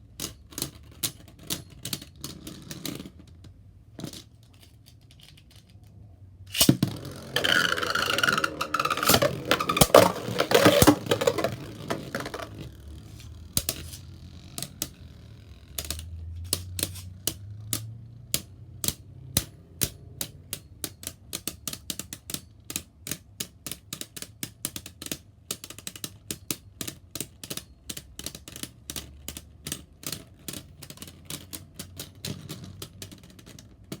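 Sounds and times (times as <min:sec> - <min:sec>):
spinning tops whirring and clashing: 0:06.5 - 0:14.8.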